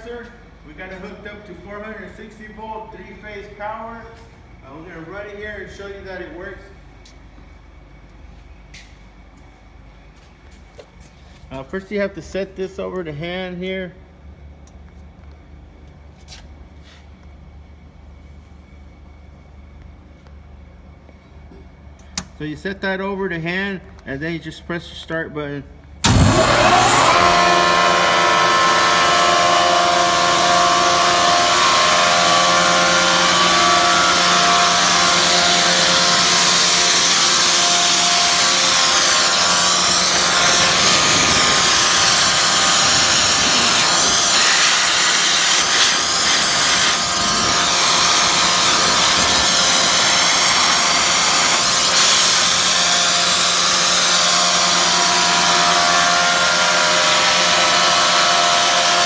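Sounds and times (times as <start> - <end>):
air compressor humming and whining: 25.8 - 59.0
air hissing: 26.0 - 55.7.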